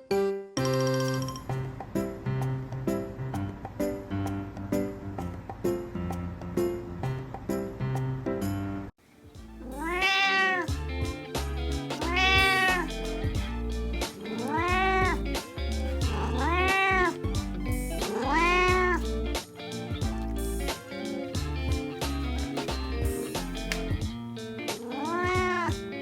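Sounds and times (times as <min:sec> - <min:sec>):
background music: 0:00.0 - 0:26.0
cat meowing: 0:09.6 - 0:10.8, 0:12.0 - 0:19.4, 0:24.8 - 0:26.0.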